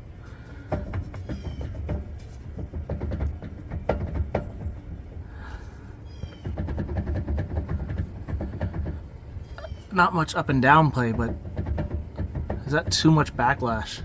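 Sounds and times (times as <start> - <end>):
differential clunking and clicking: 0.0 - 14.0
short squeaks: 1.0 - 2.6, 9.0 - 10.1.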